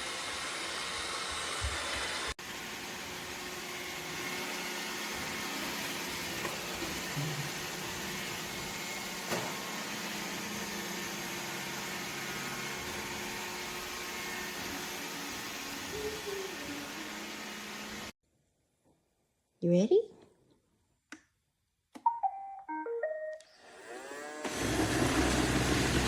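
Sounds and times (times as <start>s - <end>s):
robot vacuum whirring: 0.0s - 18.1s, 23.6s - 26.0s.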